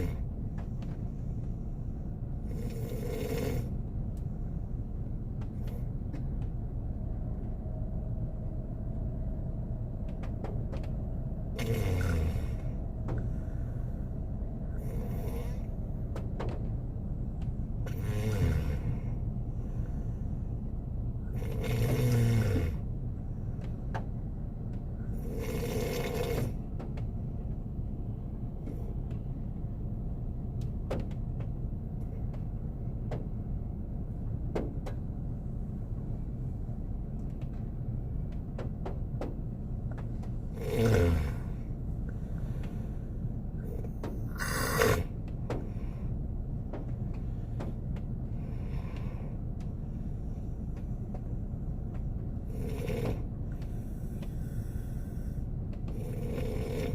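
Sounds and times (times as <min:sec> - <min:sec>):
man snoring: 0:00.0 - 0:00.2, 0:02.4 - 0:03.8, 0:11.6 - 0:12.8, 0:14.8 - 0:15.7, 0:17.8 - 0:19.1, 0:21.3 - 0:22.8, 0:25.1 - 0:26.6, 0:40.5 - 0:41.6, 0:43.7 - 0:45.1, 0:52.5 - 0:53.3, 0:55.9 - 0:56.9
steady low rumble: 0:00.0 - 0:56.9.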